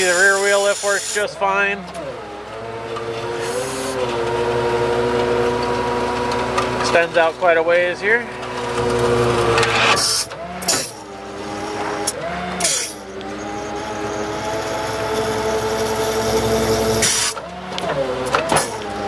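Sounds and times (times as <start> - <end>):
diesel engine high idle: 0.0 - 19.0
hydraulic pump hum: 0.0 - 19.0
hydraulic hiss: 17.0 - 17.4.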